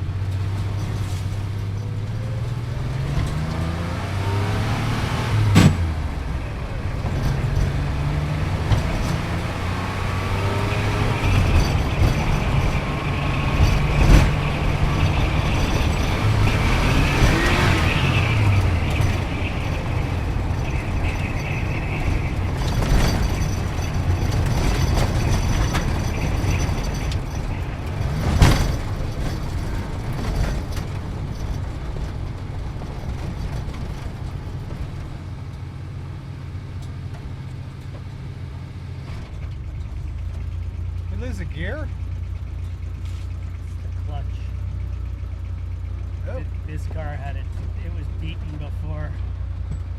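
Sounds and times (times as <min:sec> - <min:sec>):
car engine at low revs: 0:00.0 - 0:49.9
sharp knocks: 0:05.4 - 0:06.2.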